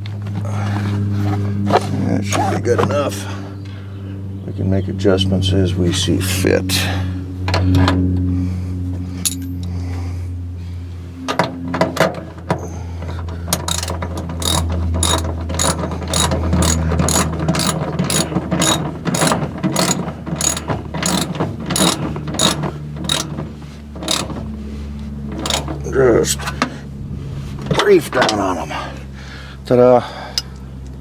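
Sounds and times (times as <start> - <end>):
steady low hum: 0.0 - 31.0
ratchet wrench clicking: 13.5 - 23.4, 24.0 - 24.5, 25.3 - 25.9.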